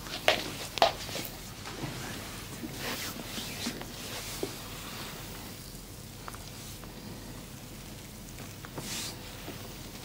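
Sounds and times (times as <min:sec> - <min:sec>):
hands rubbing skin and clothing: 0:02.7 - 0:04.6.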